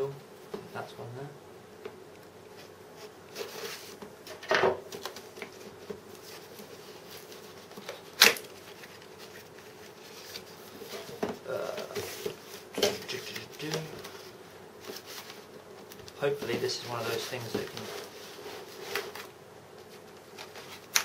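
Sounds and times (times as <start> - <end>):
faint steady hum: 0.0 - 21.0
cardboard box rustling: 16.3 - 19.3.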